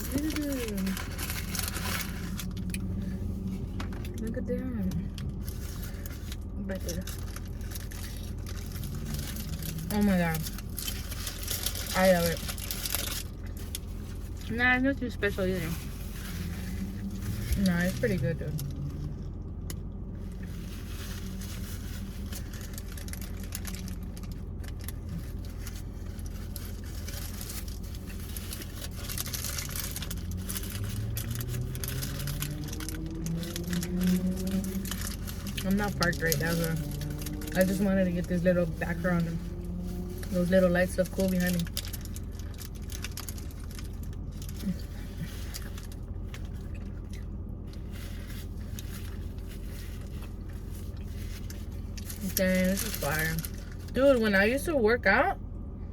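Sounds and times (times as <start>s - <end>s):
food being handled and chewed: 0.0s - 4.2s, 4.8s - 14.6s, 15.2s - 54.0s
car engine humming: 0.0s - 55.9s
rising hum: 27.6s - 40.4s.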